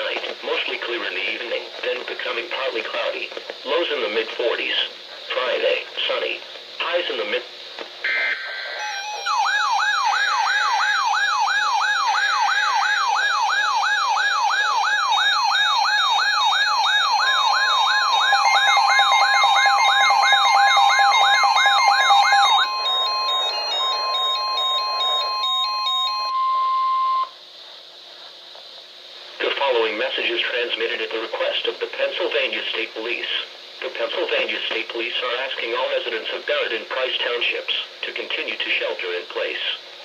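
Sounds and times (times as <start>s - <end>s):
screeching data bursts: 8.0s - 26.3s
electronic yelp siren: 8.0s - 27.3s
steady warning alarm tone: 8.0s - 27.4s
stepped electronic beeping: 16.9s - 27.3s.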